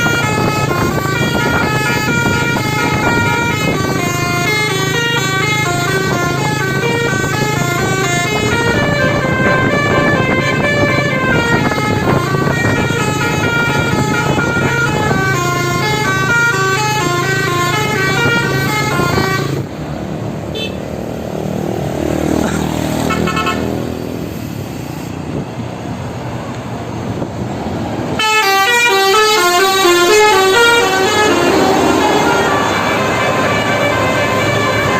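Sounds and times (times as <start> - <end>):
musical bus air horn: 0.0 - 19.7, 20.5 - 20.9, 22.9 - 23.8, 28.2 - 34.9
traffic noise: 0.0 - 34.9.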